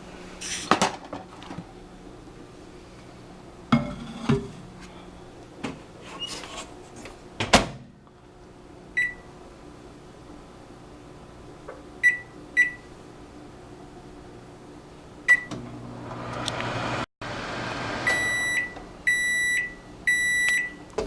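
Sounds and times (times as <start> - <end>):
microwave oven humming: 6.8 - 20.9.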